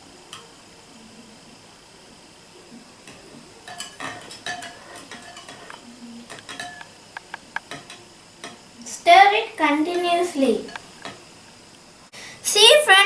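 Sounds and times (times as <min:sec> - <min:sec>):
spoon clinking in a bowl: 0:03.7 - 0:05.7, 0:06.3 - 0:06.9.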